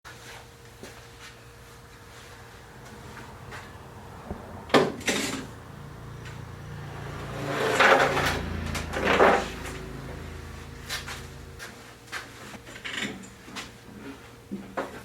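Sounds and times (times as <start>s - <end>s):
scraping bursts: 2.2s - 11.8s.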